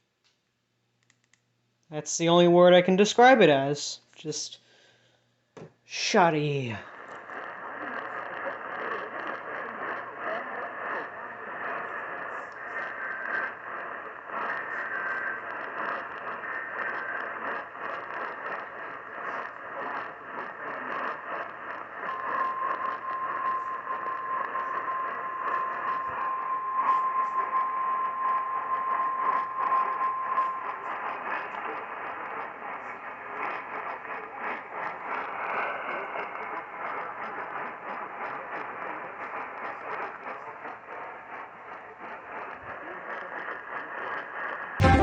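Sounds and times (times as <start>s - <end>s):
radio static: 6.0s - 41.0s
steady single tone: 19.0s - 33.1s, 44.8s - 45.0s.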